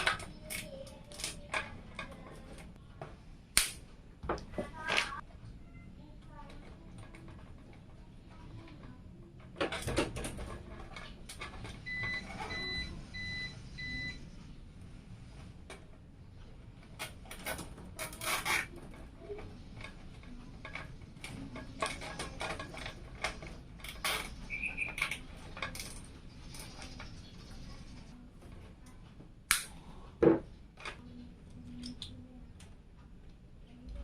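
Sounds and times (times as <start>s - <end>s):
computer parts clicking and rattling: 0.0s - 2.8s, 6.0s - 14.1s, 15.6s - 29.7s.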